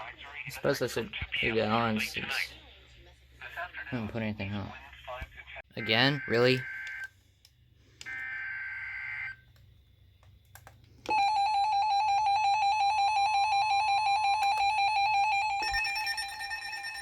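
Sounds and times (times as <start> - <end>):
loud steady electronic tone: 11.1 - 17.0.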